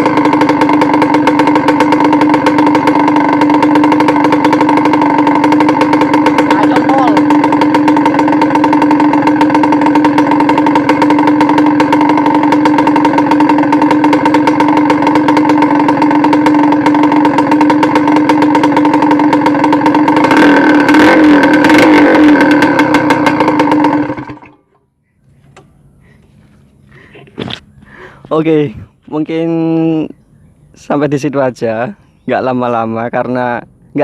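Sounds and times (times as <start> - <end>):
two-stroke motorcycle engine running: 0.0 - 34.0.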